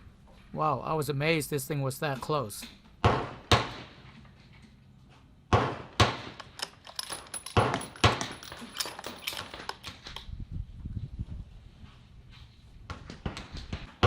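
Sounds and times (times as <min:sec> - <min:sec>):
metal gear clicking and clinking: 0:06.4 - 0:10.0.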